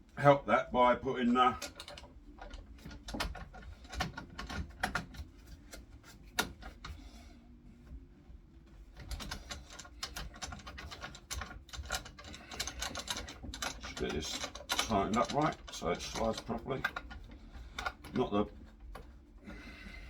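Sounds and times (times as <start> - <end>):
clamps and wooden parts knocking: 9.0 - 18.2.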